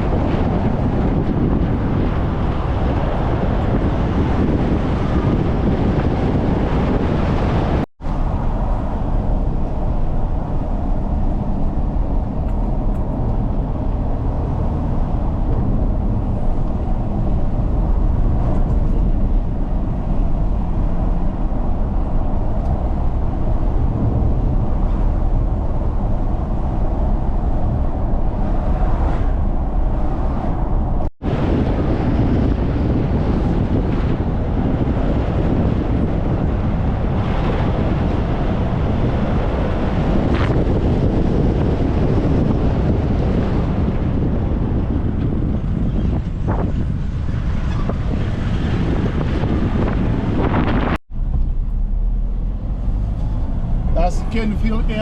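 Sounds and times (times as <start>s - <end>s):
car engine and tyre noise: 0.0s - 55.0s.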